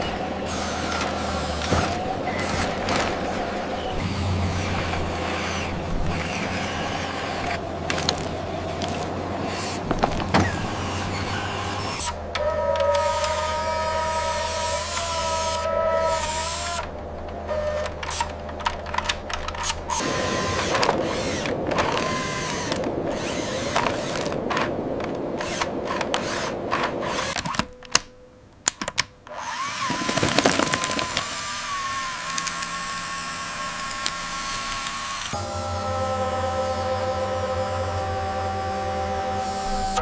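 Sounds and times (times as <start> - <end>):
mechanical whirring: 0.0 - 28.0, 29.2 - 40.0
sharp clicks and knocks: 23.7 - 31.3.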